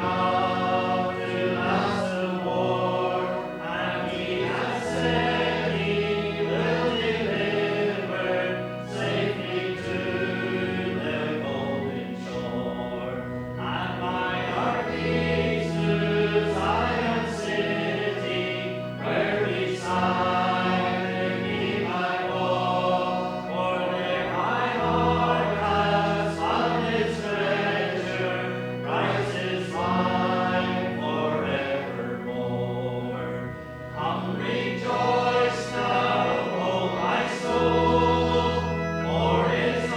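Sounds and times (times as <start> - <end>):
choir singing a slow hymn: 0.0 - 39.9
instrumental accompaniment: 0.0 - 39.9.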